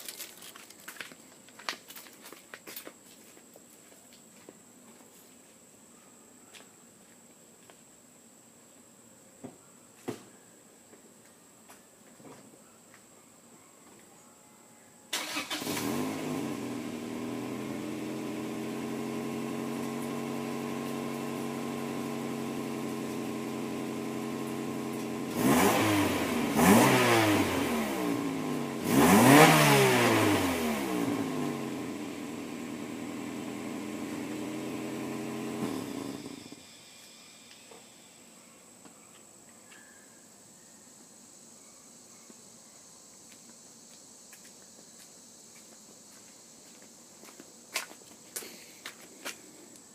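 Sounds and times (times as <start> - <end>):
car engine starting and idling: 15.1 - 36.6
engine revving: 15.2 - 36.6.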